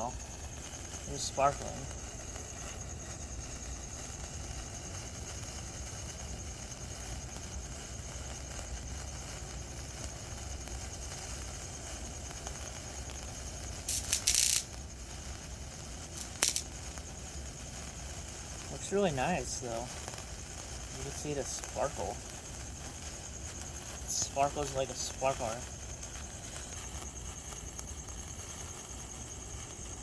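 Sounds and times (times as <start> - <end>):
sparkler fizzing and crackling: 0.0 - 30.0
short bursts of noise: 13.8 - 14.7.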